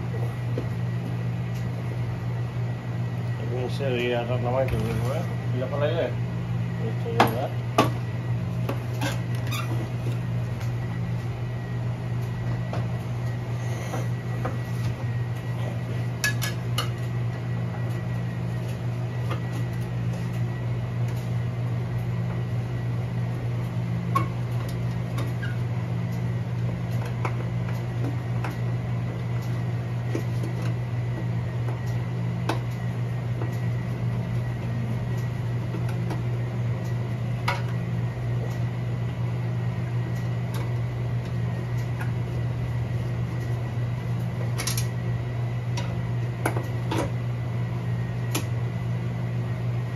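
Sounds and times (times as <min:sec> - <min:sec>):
low hum with high whine: 0:00.0 - 0:49.9.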